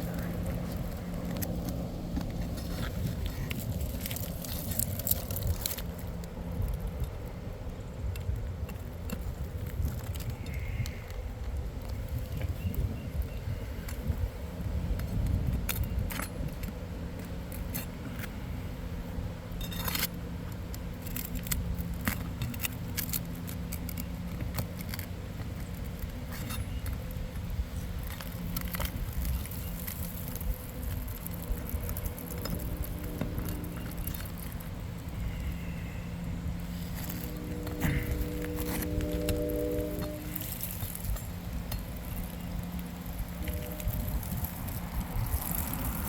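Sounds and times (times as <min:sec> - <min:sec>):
steady low rumble: 0:00.0 - 0:46.0
hand tools clinking and scraping: 0:19.6 - 0:20.2, 0:27.7 - 0:46.0.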